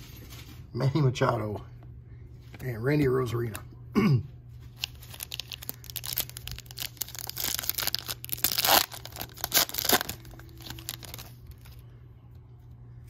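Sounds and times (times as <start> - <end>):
foil wrapper tearing and crinkling: 4.7 - 11.8.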